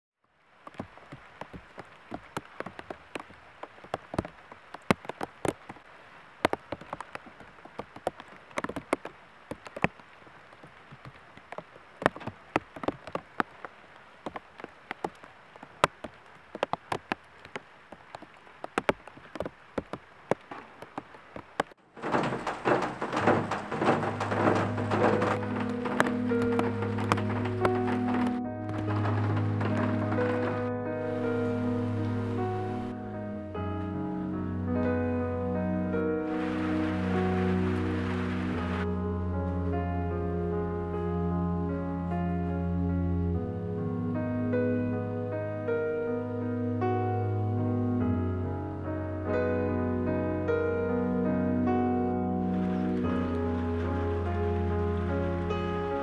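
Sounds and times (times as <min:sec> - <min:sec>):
light rain on leaves: 0:00.2 - 0:39.7, 0:52.4 - 0:56.0
music: 0:22.6 - 0:56.0.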